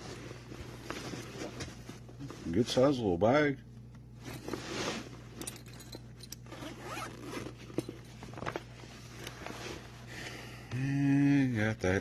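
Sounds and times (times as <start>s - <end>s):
zipper rasping open: 6.4s - 7.9s.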